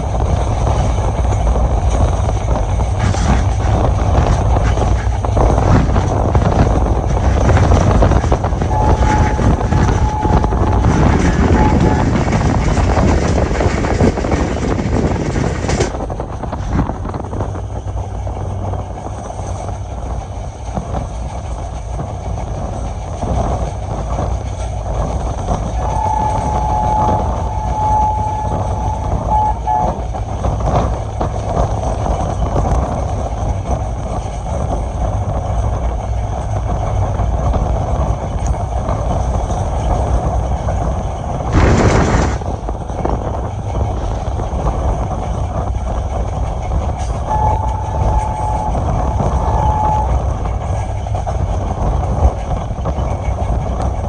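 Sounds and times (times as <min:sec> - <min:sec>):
train wheels rumbling on track: 0:00.0 - 0:54.0
two-note locomotive horn: 0:08.6 - 0:12.5, 0:25.8 - 0:30.2, 0:47.3 - 0:50.4.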